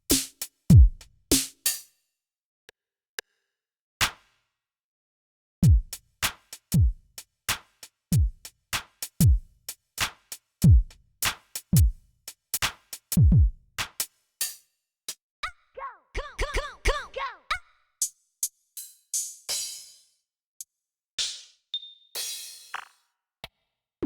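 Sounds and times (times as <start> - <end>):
snare and hi-hat hits: 0.0 - 1.9, 4.0 - 4.4, 5.6 - 15.2, 18.0 - 20.1, 21.2 - 21.6, 22.2 - 23.0
deep kick drum: 0.7 - 1.1, 5.6 - 6.0, 6.8 - 7.0, 8.2 - 8.4, 9.2 - 9.4, 10.6 - 10.9, 11.8 - 12.0, 13.2 - 13.6.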